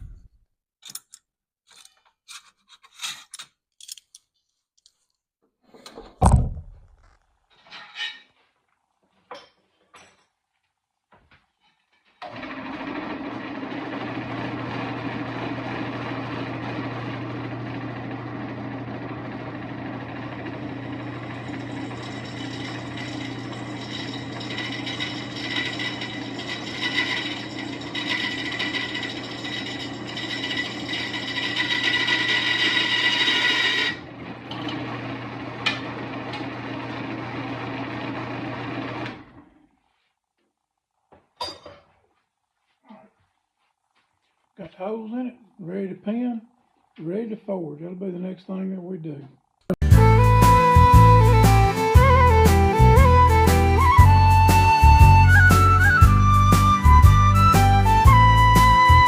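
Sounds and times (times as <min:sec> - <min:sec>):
loud thump: 0:06.0 - 0:07.0
handling knocks: 0:06.0 - 0:07.2
electric drill motor running: 0:12.3 - 0:39.4
drill cutting through steel: 0:20.1 - 0:35.8.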